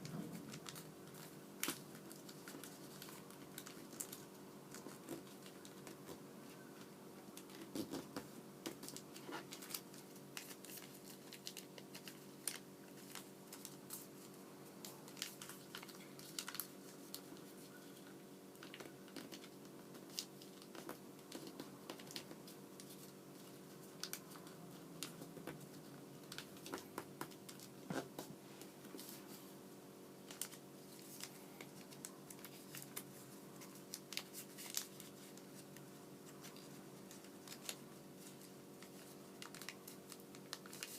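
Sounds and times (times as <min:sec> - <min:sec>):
paper crinkling and folding: 0:00.0 - 0:29.5, 0:30.2 - 0:40.9.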